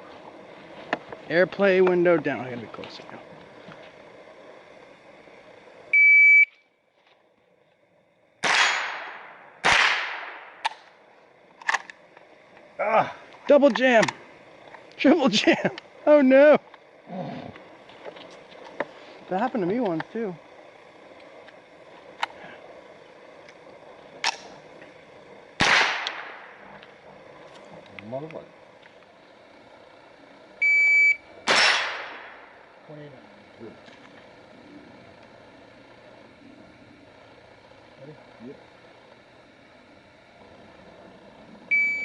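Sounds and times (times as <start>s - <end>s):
shot timer beep: 6.0s - 6.6s, 30.6s - 31.2s, 41.7s - 42.0s
gunshots with echo: 8.4s - 10.4s, 25.6s - 26.4s, 31.5s - 32.3s.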